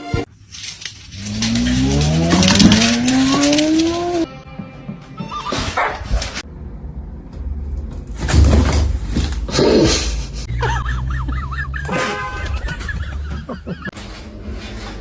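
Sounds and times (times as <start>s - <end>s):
background music: 2.8s - 5.9s
dog barking and whimpering: 5.3s - 6.4s.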